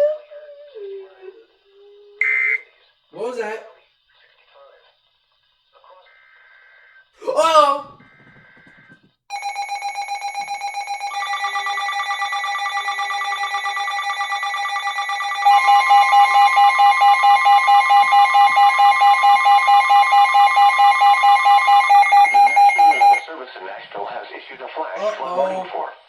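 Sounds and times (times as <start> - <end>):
fast-pulsing electronic beep: 9.3 - 23.3.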